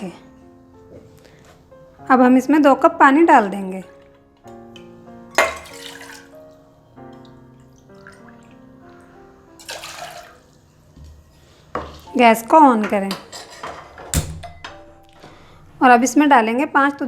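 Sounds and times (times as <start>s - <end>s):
soft background music: 0.0s - 17.0s
water poured into a pan: 5.4s - 6.4s, 9.6s - 10.5s.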